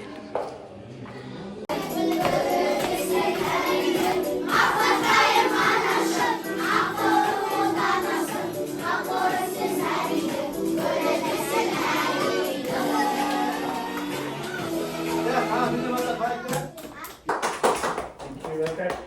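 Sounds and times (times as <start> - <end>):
choir singing: 1.7 - 16.5.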